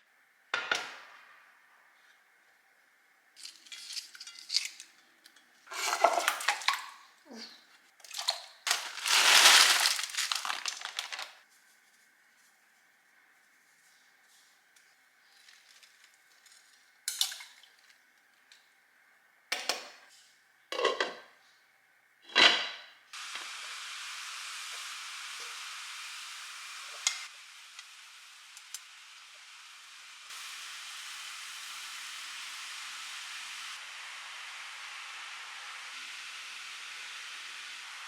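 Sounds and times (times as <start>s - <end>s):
pots and utensils clattering: 5.7s - 7.0s, 8.1s - 11.3s, 20.8s - 21.3s, 22.3s - 22.9s
food sizzling in a pan: 5.7s - 7.1s, 8.7s - 11.4s, 23.2s - 38.0s.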